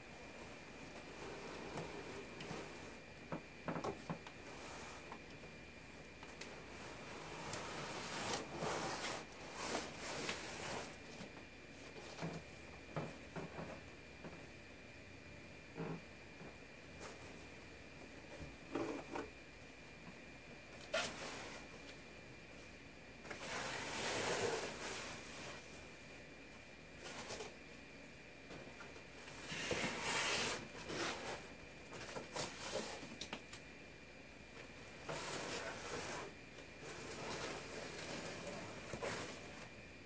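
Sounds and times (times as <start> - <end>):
cardboard box rustling and scraping: 6.7 - 11.0, 29.4 - 33.1, 35.1 - 39.7.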